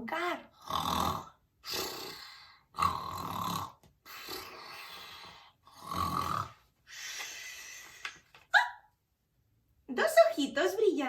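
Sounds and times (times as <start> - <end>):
person snoring: 0.5 - 7.8.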